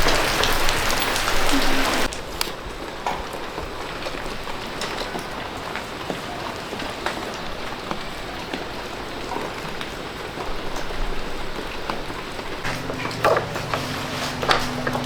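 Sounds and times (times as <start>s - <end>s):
hiss of water: 0.0s - 2.5s.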